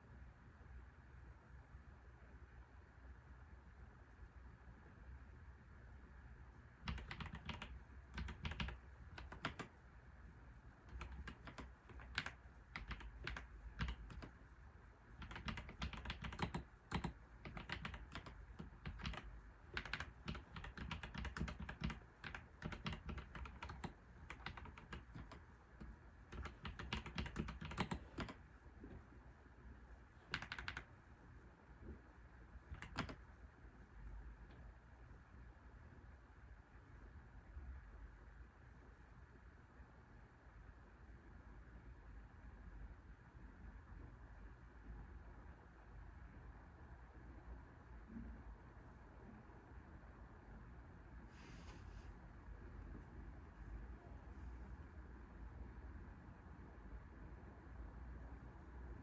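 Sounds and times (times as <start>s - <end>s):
computer keyboard typing: 6.8s - 9.8s, 10.8s - 14.5s, 15.1s - 28.6s, 30.2s - 31.0s, 32.6s - 33.3s.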